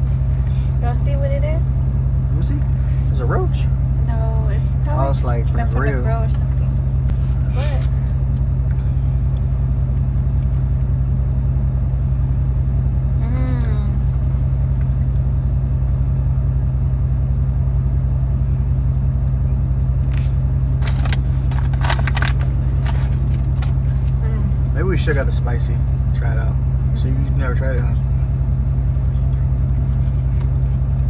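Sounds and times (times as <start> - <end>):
car engine idling: 0.0 - 31.0
voice humming: 13.2 - 14.1.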